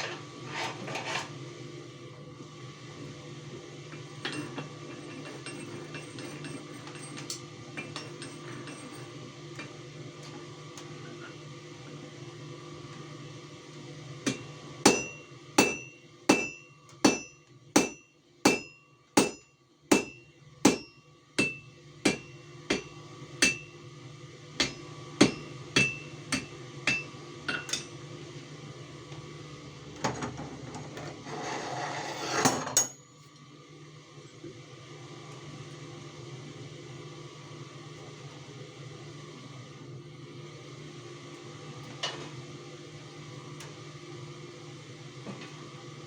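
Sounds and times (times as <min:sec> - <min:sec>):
hammer striking metal on anvil: 0:14.3 - 0:23.8, 0:24.6 - 0:28.0.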